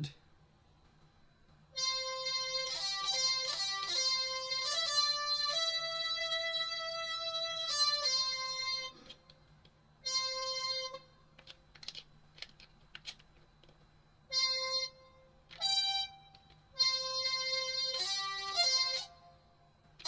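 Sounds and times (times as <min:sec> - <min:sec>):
digital wind instrument notes: 0:01.8 - 0:08.9, 0:10.0 - 0:11.0, 0:14.3 - 0:15.0, 0:16.8 - 0:19.3.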